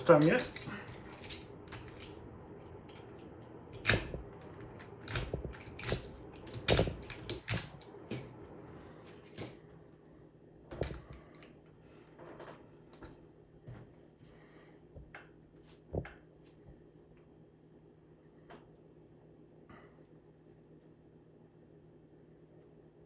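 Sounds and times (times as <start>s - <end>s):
padlock and lock picks clicking: 0.4s - 2.1s, 3.7s - 8.4s.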